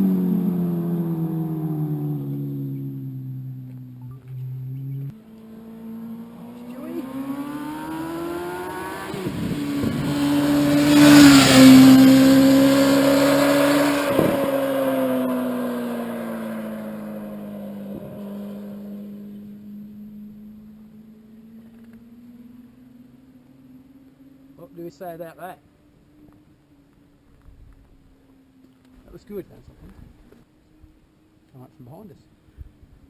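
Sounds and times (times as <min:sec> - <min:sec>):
motorcycle accelerating past: 0:00.0 - 0:24.4.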